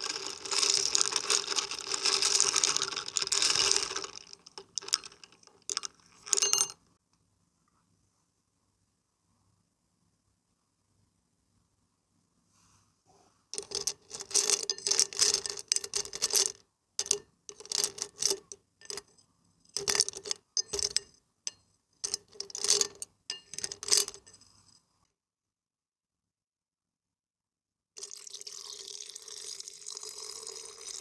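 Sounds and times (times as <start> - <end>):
small hard objects clinking: 0.0 - 6.8, 13.6 - 19.1, 19.7 - 24.4.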